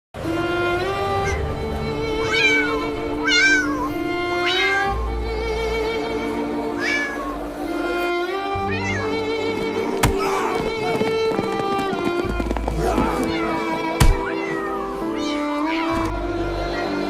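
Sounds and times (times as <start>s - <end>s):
bowed string music: 0.2s - 17.0s
cat meowing: 1.2s - 1.4s, 2.2s - 5.1s, 6.8s - 7.3s, 8.6s - 9.2s, 13.3s - 16.1s.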